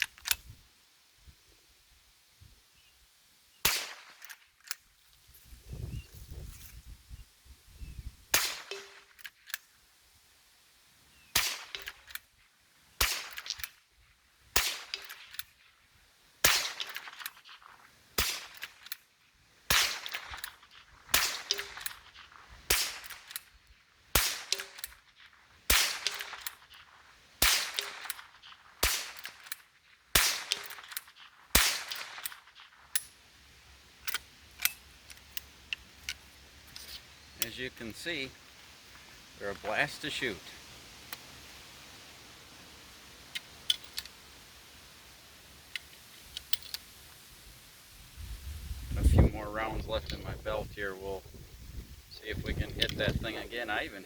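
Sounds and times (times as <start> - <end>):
small clicks: 0.0 - 0.5
rifle shots: 3.6 - 4.3, 8.3 - 9.1, 11.3 - 12.1, 13.0 - 13.7, 14.5 - 15.4, 16.4 - 17.3, 18.2 - 18.8, 19.7 - 23.4, 24.1 - 26.8, 27.4 - 32.8.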